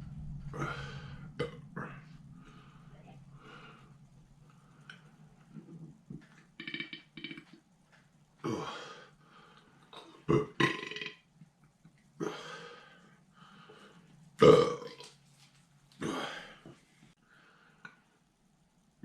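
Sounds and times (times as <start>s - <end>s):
man belching loudly: 6.6s - 7.6s, 10.3s - 11.2s, 14.4s - 15.0s.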